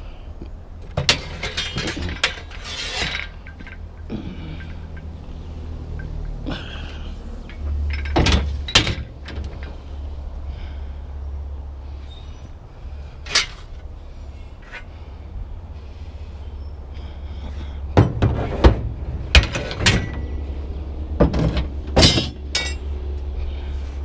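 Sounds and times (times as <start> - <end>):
scrap metal banging and clanking: 0.9 - 5.1, 5.9 - 9.8, 13.2 - 13.8, 17.9 - 20.6, 21.2 - 23.0.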